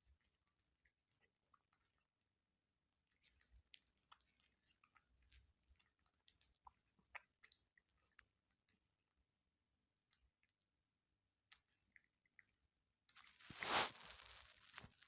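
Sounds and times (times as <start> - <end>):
chewing and crunching food: 0.0 - 2.4, 3.0 - 9.0, 11.5 - 15.0.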